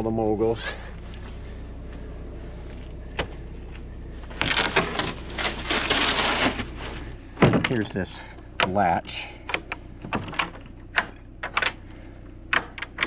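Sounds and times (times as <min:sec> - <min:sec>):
steady low hum: 0:00.0 - 0:13.0
wooden panels scraping and rattling: 0:04.2 - 0:13.0.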